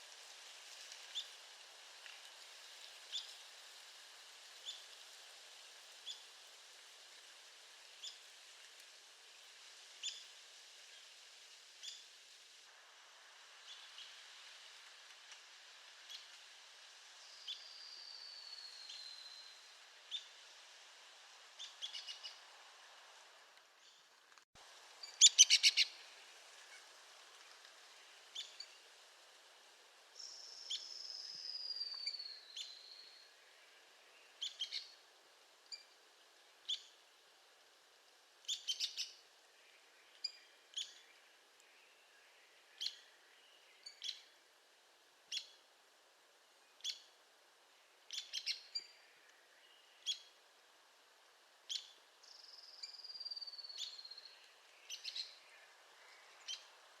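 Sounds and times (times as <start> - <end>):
woodpecker call notes: 25.1 - 26.0.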